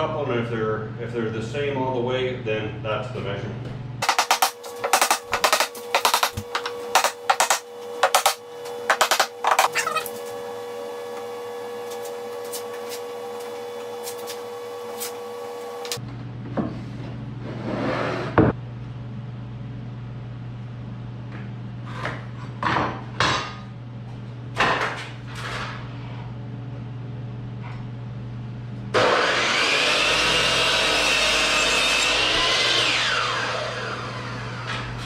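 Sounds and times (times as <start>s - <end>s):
wooden panels knocking and scraping: 4.0s - 10.0s.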